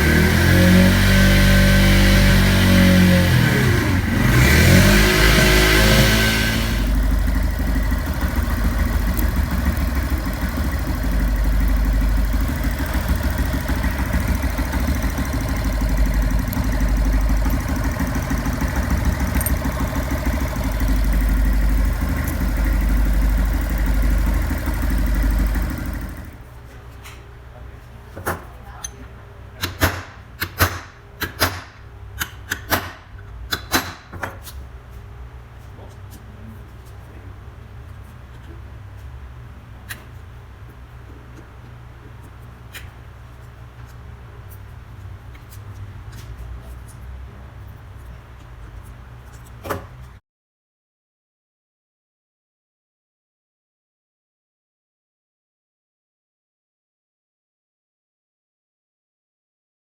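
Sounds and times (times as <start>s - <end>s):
motorcycle engine idling with whine: 0.0s - 28.0s
sharp clicks and knocks: 12.4s - 21.2s, 29.6s - 34.6s.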